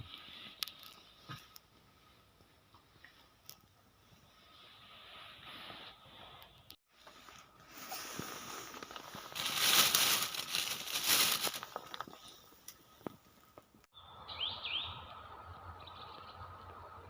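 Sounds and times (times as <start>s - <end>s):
small bird chirping: 13.9s - 16.5s.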